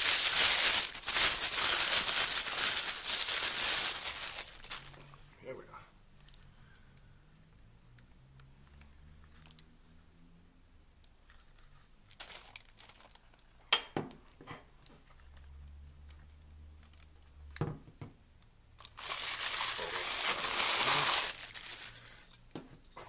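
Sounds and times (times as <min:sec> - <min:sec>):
wrapping crinkling and tearing: 0:00.0 - 0:05.2, 0:11.3 - 0:13.6, 0:18.8 - 0:22.3.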